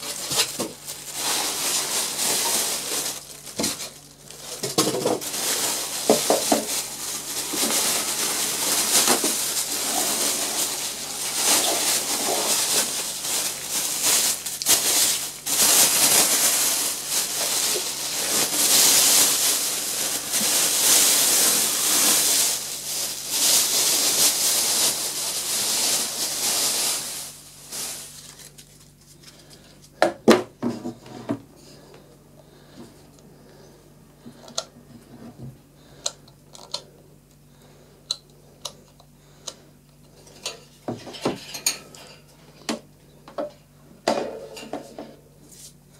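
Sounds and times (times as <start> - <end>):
packaging rustling and rubbing: 0.0 - 29.6.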